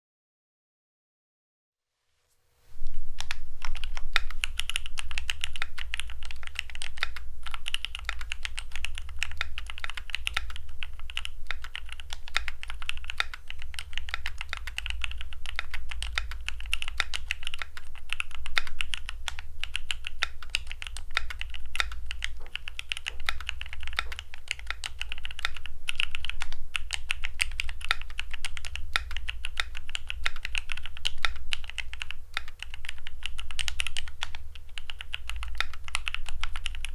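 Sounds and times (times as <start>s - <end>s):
office background hum: 2.7s - 36.9s
fast typing on mechanical keyboard: 3.2s - 36.9s.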